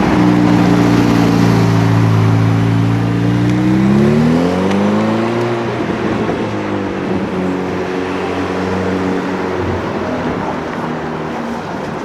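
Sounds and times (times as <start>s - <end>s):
street traffic noise: 0.0s - 12.0s
car engine running: 7.0s - 12.0s.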